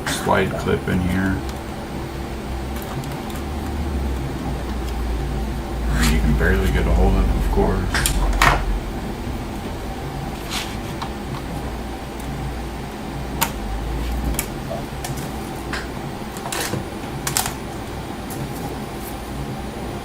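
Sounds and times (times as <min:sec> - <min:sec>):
low rumble: 0:01.4 - 0:16.2.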